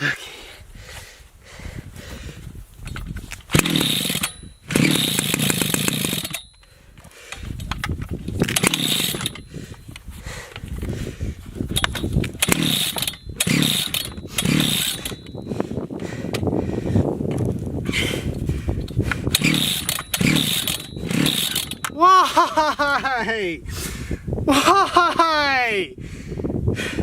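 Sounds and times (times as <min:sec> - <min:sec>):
chainsaw pull-start whirring: 0:02.8 - 0:16.5, 0:17.3 - 0:23.3.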